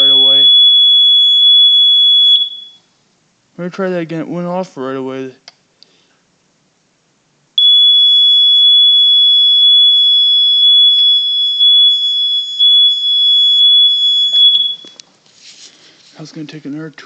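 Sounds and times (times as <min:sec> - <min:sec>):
high-pitched alarm tone: 0:00.0 - 0:02.8, 0:07.6 - 0:15.0.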